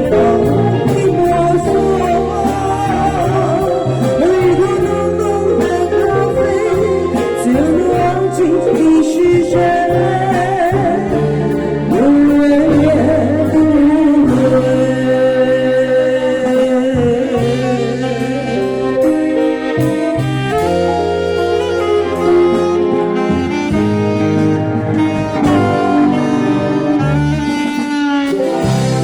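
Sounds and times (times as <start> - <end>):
instrumental accompaniment: 0.0 - 29.0
person singing a slow ballad: 0.0 - 29.0.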